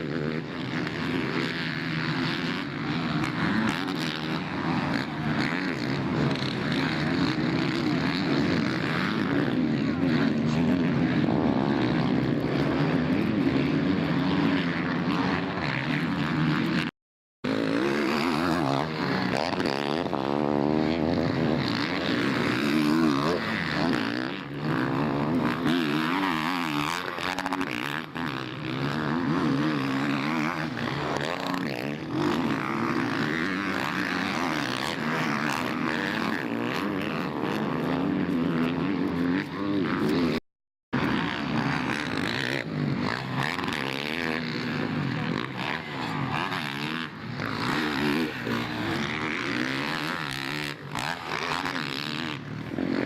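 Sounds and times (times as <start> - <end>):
dirt bike engines revving: 0.0 - 40.4, 41.0 - 53.0.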